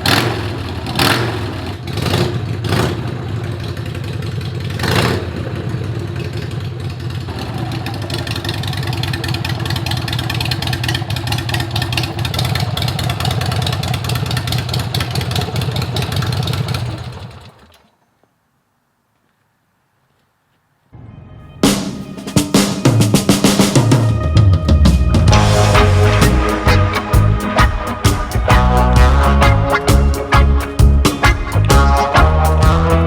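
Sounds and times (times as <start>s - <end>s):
motorcycle engine running steadily: 0.0s - 17.7s
motorcycle engine revving: 0.0s - 17.8s, 25.3s - 33.0s.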